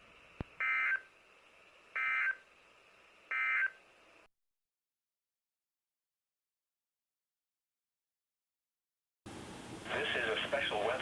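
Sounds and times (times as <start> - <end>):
digital squawks: 0.6 - 1.1, 2.0 - 2.4.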